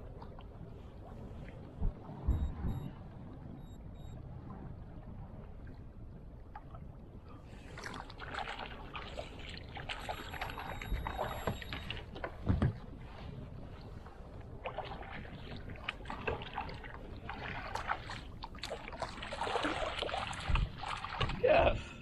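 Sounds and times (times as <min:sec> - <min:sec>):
water sloshing against kayak: 0:00.0 - 0:22.0
low rumble: 0:01.0 - 0:07.1.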